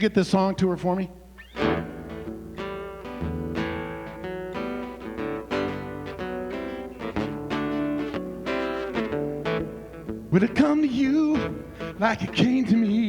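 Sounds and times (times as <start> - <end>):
acoustic guitar playing: 1.3 - 13.0.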